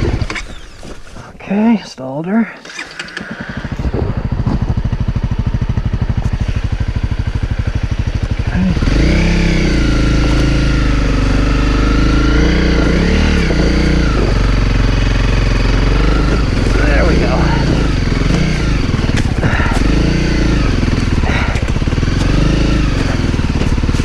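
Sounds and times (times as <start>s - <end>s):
motorcycle engine running: 0.0s - 1.2s, 3.0s - 24.0s
electric starter cranking: 2.6s - 6.3s, 8.8s - 24.0s.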